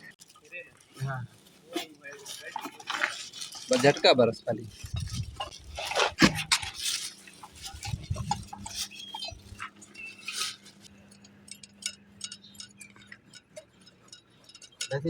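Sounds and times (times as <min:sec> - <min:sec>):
light metallic clinks and taps: 0:07.6 - 0:15.0.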